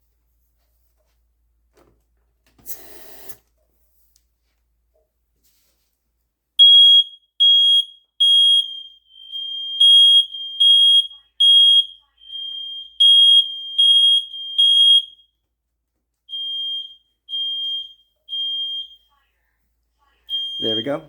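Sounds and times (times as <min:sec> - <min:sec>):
fainter second alarm: 0:06.6 - 0:15.4, 0:16.3 - 0:19.2, 0:20.2 - 0:21.0
smoke alarm beeping: 0:06.6 - 0:15.4, 0:16.3 - 0:19.2, 0:20.3 - 0:21.0.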